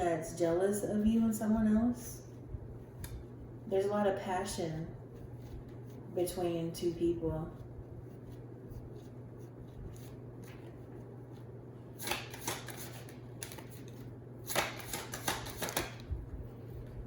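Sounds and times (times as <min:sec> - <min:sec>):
low steady hum: 0:00.0 - 0:17.0
cards being shuffled: 0:08.2 - 0:16.1.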